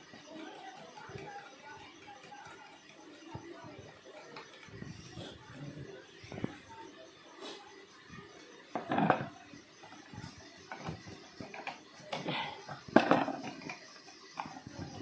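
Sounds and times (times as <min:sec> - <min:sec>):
knocks and clatter of fan parts: 0:08.7 - 0:09.3, 0:10.6 - 0:13.8.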